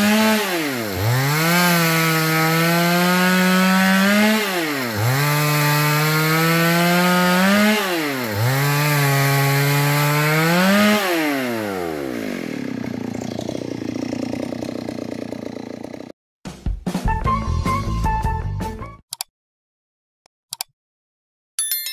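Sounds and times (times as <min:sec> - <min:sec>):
hand saw cutting wood: 0:00.0 - 0:16.1.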